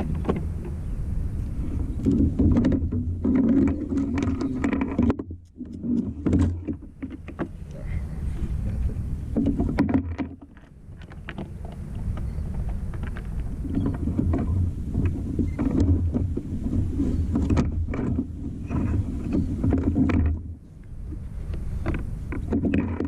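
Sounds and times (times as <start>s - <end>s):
wind and water rumble: 0.0s - 23.0s
light clicks and knocks: 2.0s - 7.9s.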